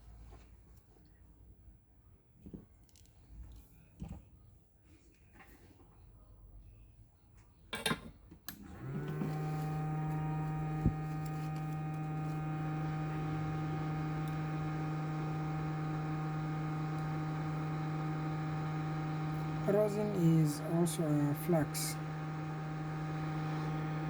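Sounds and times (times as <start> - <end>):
hot air blower humming: 8.6 - 24.0.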